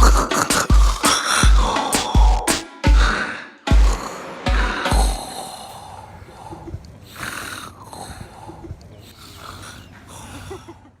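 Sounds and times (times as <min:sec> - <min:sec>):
man snoring: 0:00.0 - 0:08.6.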